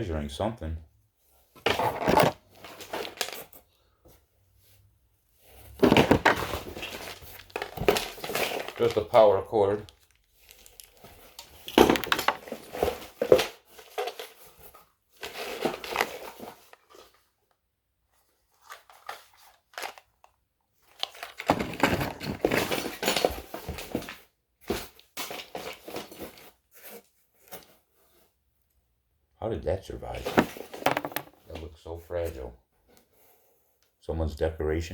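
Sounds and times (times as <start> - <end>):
paper and plastic crinkling: 1.7 - 3.6, 5.8 - 14.5, 18.5 - 27.7.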